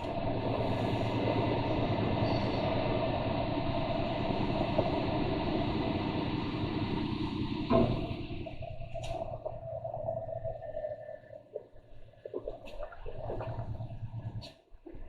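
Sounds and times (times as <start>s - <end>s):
diesel engine running under load: 0.0s - 10.6s.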